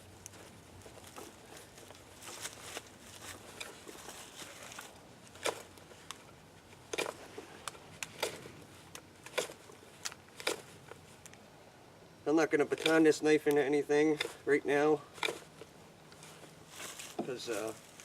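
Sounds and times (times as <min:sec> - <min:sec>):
knife carving wood: 0:06.8 - 0:11.0, 0:12.6 - 0:14.5, 0:15.1 - 0:15.5.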